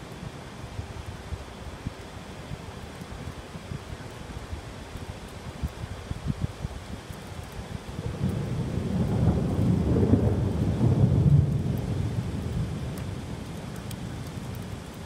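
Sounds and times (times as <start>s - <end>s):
heavy rain: 0.0s - 15.0s
thunder rumbling: 7.8s - 14.9s.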